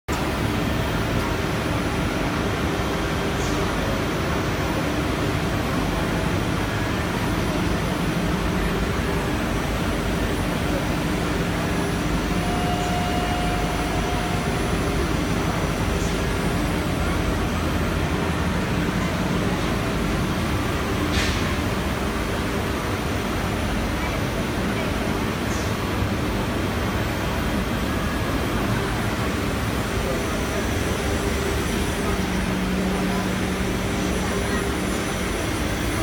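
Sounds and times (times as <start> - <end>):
machinery drone: 0.1 - 36.0
brief higher whine: 11.9 - 16.8.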